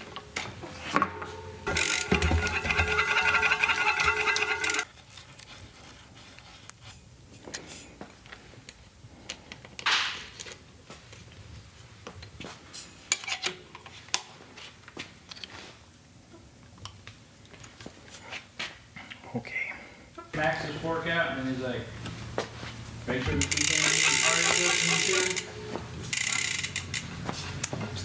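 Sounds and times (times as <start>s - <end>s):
metal tools clinking: 1.0s - 4.8s
loud rasping noise: 1.6s - 4.8s.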